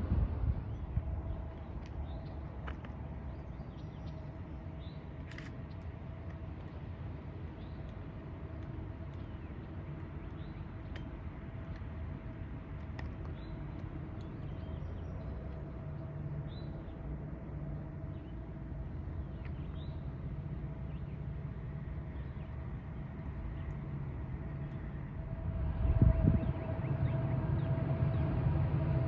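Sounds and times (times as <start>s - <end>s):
diesel locomotive engine droning: 0.0s - 29.0s.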